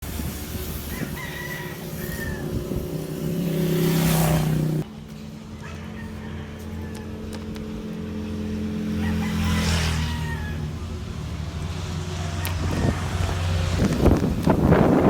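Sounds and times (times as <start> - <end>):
vehicle engine: 0.0 - 15.0
rooster crowing: 0.8 - 4.8, 5.6 - 7.4, 8.3 - 10.9, 12.2 - 13.6.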